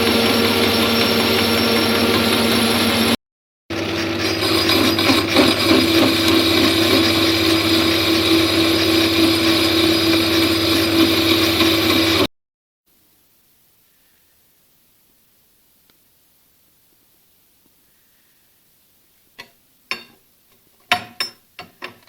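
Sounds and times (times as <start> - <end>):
machine-tool motor humming: 0.0 - 12.3.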